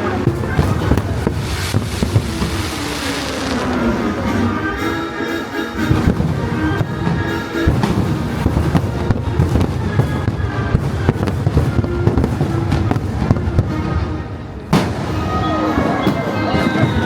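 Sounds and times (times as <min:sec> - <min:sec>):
fireworks bangs and crackles: 0:00.0 - 0:05.0, 0:05.7 - 0:17.0
loud show music: 0:00.1 - 0:17.0.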